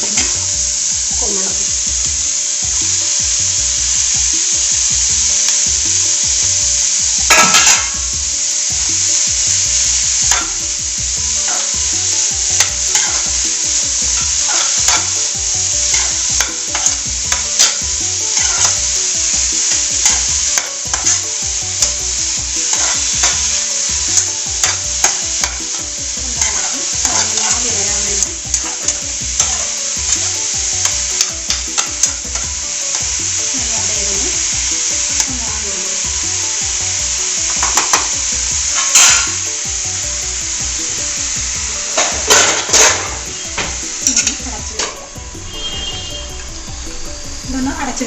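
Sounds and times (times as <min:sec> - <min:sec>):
mushrooms sizzling in oil: 0:00.0 - 0:48.0
spatula scraping a pan: 0:08.7 - 0:35.3.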